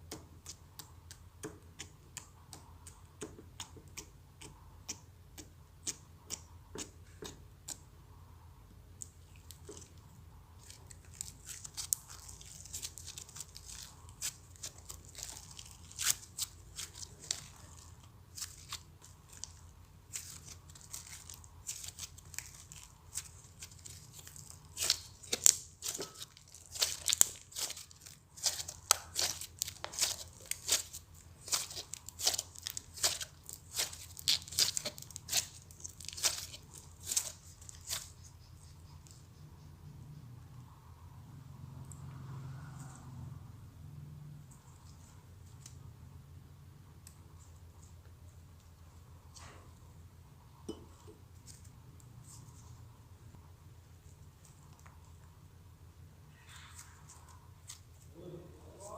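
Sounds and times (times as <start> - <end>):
slime crackling and popping: 10.6 - 38.3.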